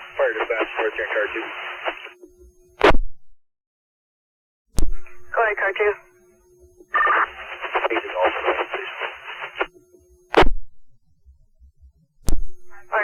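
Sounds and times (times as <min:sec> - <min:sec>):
voice over radio speaker: 0:00.0 - 0:02.1, 0:05.3 - 0:06.0, 0:07.0 - 0:09.7, 0:12.7 - 0:13.0.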